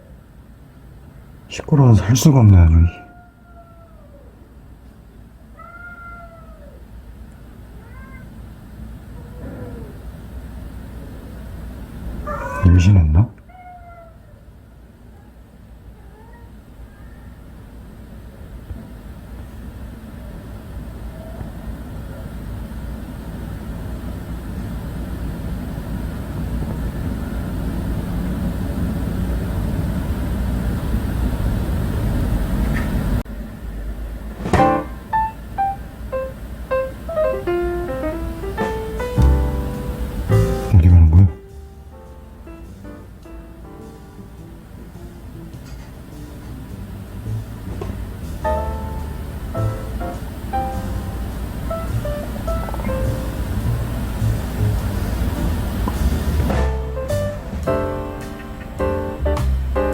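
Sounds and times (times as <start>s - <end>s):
cat meowing: 2.8s - 4.4s, 5.6s - 6.9s, 7.7s - 8.4s, 9.1s - 10.0s, 12.3s - 14.5s, 15.9s - 17.4s
vehicle passing rumble: 44.2s - 59.9s.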